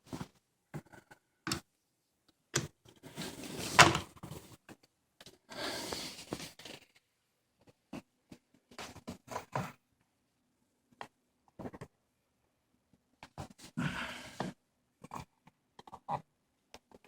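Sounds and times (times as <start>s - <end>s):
rubbing or scraping: 3.0s - 4.4s.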